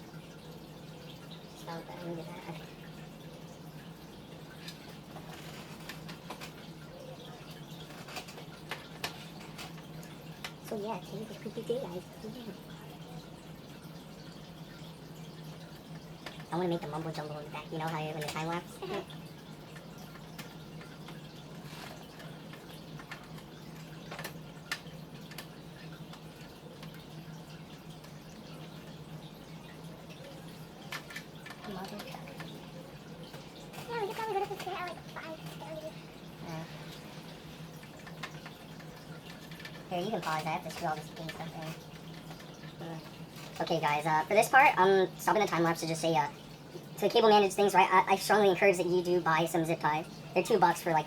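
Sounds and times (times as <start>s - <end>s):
computer parts clicking and tapping: 4.5s - 10.8s, 17.7s - 35.8s.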